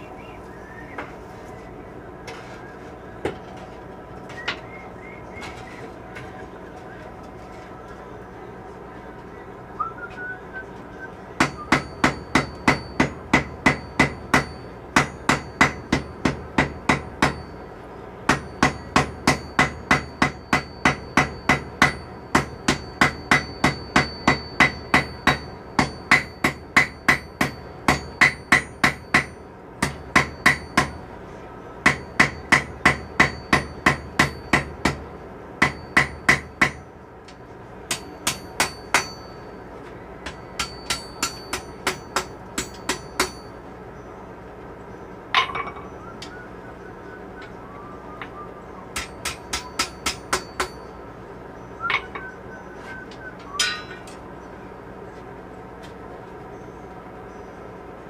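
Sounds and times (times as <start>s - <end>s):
hammer striking steel on anvil: 11.4s - 17.6s, 18.2s - 31.1s, 31.8s - 36.8s, 37.9s - 39.5s, 40.2s - 43.6s, 45.3s - 45.9s, 48.9s - 51.0s, 51.8s - 52.3s, 53.6s - 54.2s
high metallic ring: 11.5s - 15.9s, 37.9s - 39.7s, 40.4s - 43.6s, 49.0s - 51.1s, 53.6s - 54.2s.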